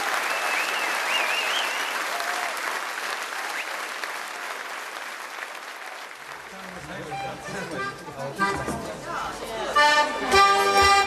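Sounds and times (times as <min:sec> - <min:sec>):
audience applauding: 0:00.0 - 0:07.7.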